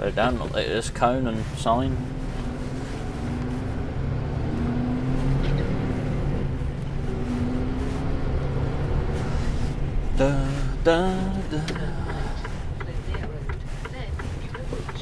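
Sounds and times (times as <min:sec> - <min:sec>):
lorry diesel engine running: 0:00.0 - 0:15.0.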